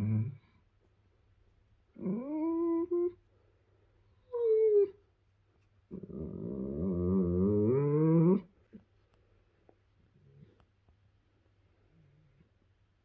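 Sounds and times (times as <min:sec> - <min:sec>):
dog whining and moaning: 0:01.9 - 0:03.2, 0:04.2 - 0:05.0, 0:05.9 - 0:08.6.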